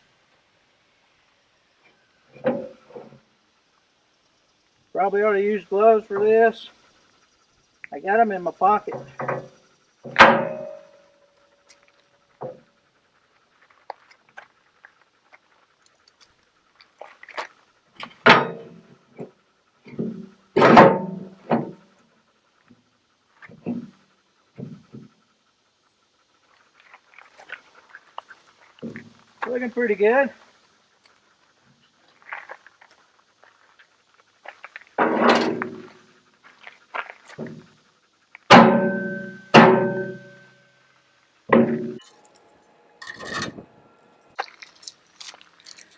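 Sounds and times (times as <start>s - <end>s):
ringing metal clangs: 8.9s - 11.4s, 18.2s - 18.8s, 20.6s - 21.8s, 38.5s - 40.7s, 41.5s - 44.3s
steel bar clanking against bucket: 10.1s - 11.1s, 18.2s - 18.8s, 38.5s - 40.4s, 43.0s - 43.7s
small metal clicks: 42.0s - 45.9s.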